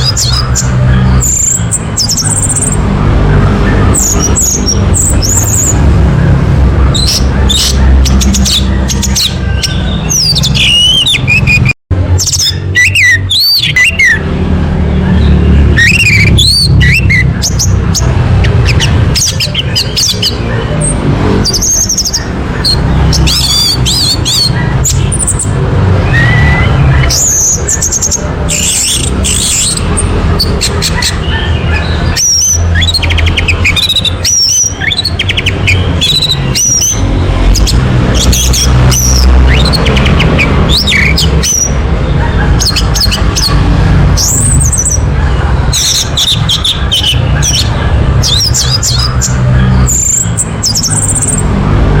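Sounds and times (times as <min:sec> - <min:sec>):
thrush singing whistled phrases: 0:06.9 - 0:14.3, 0:15.2 - 0:20.4, 0:21.4 - 0:41.8.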